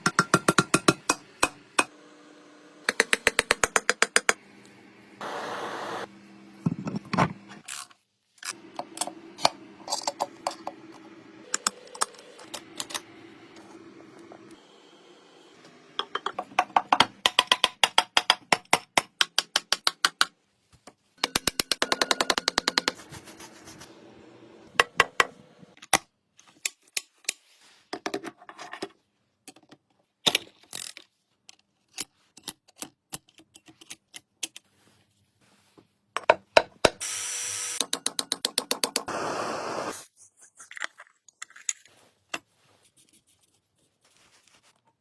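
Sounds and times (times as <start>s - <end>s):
steady hiss: 5.2s - 6.1s.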